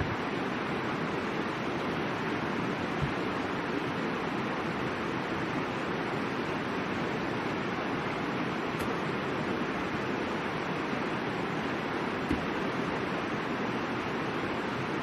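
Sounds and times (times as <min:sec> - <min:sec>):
river water rushing: 0:00.0 - 0:15.0
campfire pops: 0:12.3 - 0:12.6.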